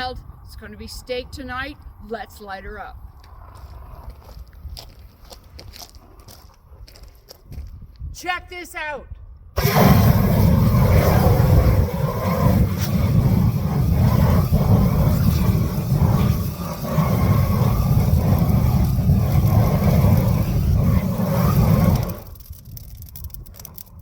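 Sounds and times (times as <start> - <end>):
flamethrower firing: 9.6 - 24.0.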